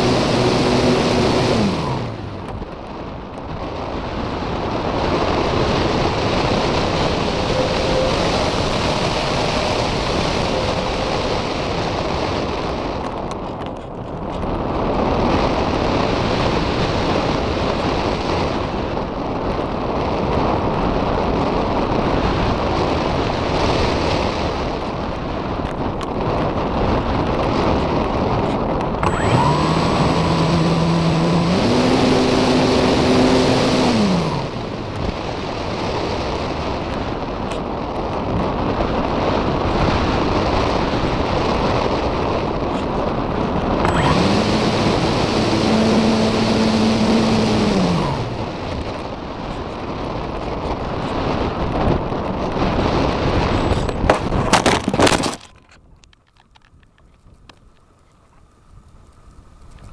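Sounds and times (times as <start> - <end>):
electric motor whine: 0.0 - 13.7, 28.8 - 36.1, 43.6 - 50.2
wind rushing over microphone: 0.0 - 59.9.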